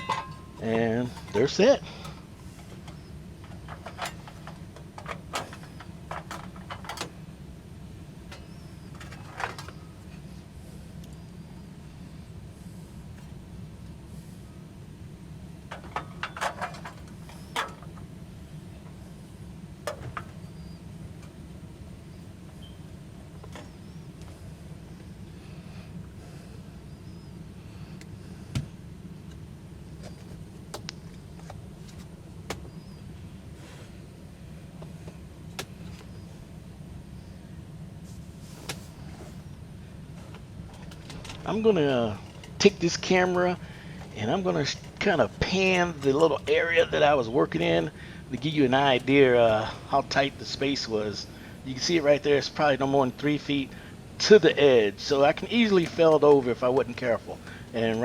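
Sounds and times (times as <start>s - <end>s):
handling clicks and knocks: 0.0s - 7.2s, 15.6s - 18.2s, 19.8s - 21.4s, 40.3s - 43.0s
water heater burner rumbling: 0.0s - 58.0s.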